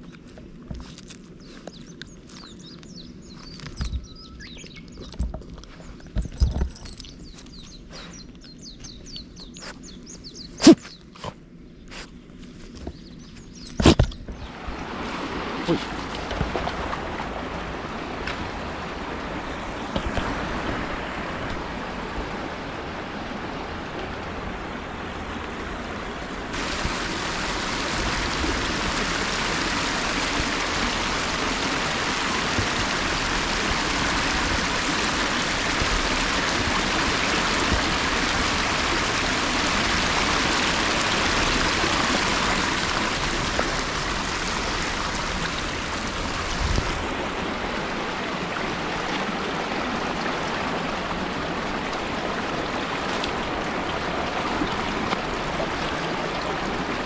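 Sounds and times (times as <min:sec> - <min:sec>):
river water flowing: 0:14.4 - 0:57.0.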